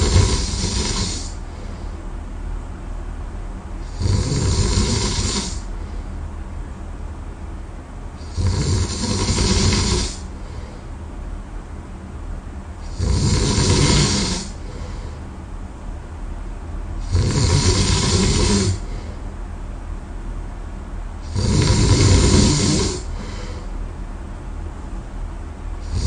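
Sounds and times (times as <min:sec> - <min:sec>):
man snoring: 0:00.0 - 0:01.4, 0:03.8 - 0:05.7, 0:08.2 - 0:10.3, 0:12.8 - 0:15.0, 0:17.0 - 0:19.0, 0:21.2 - 0:23.7
man breathing quietly: 0:00.0 - 0:02.2, 0:05.0 - 0:06.3, 0:09.2 - 0:11.2, 0:14.0 - 0:15.5, 0:17.8 - 0:19.4, 0:22.4 - 0:23.9.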